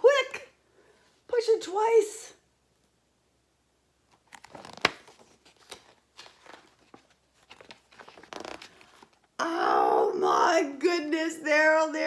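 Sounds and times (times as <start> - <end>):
book pages rustling: 4.1 - 9.4.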